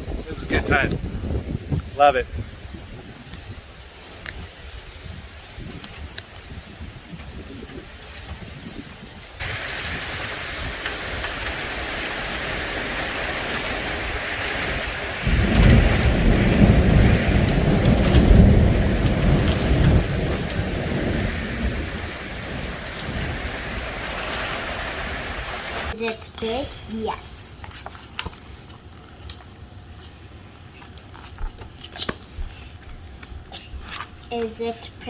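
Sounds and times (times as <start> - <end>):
thunder rumbling: 6.5 - 26.0
heavy rain hissing: 8.6 - 27.1.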